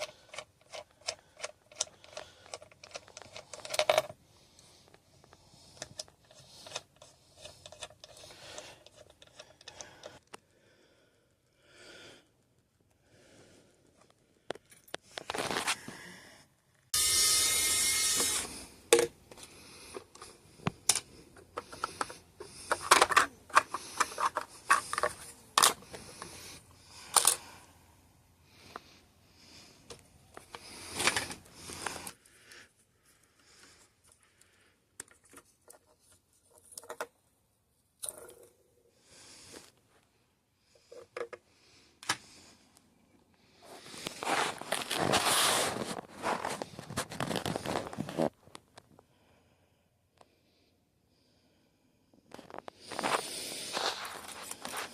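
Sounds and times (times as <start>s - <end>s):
small metal parts clicking: 0.0s - 4.2s, 5.7s - 10.2s, 19.9s - 26.4s
scraping rustle: 43.8s - 48.3s.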